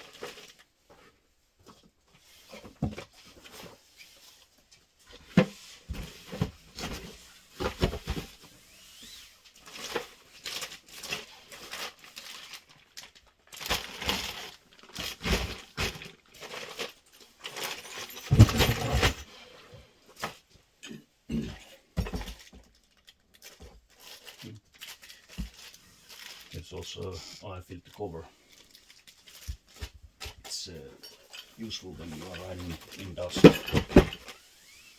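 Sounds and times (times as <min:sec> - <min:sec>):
packaging rustling and tearing: 0:09.5 - 0:19.2, 0:22.1 - 0:27.1, 0:27.8 - 0:30.4.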